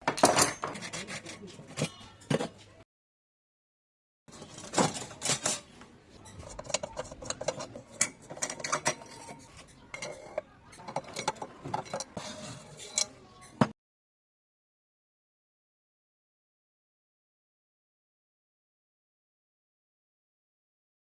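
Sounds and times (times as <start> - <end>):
metal lantern parts clinking: 4.3 - 13.6.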